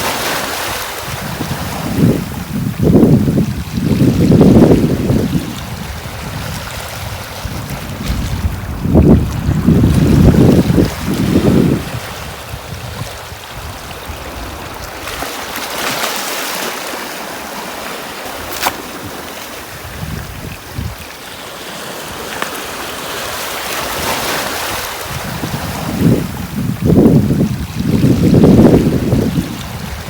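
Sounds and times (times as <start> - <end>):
surf breaking on beach: 0.0 - 8.8
wind rumble on microphone: 0.0 - 15.6, 18.4 - 21.2, 22.1 - 30.0.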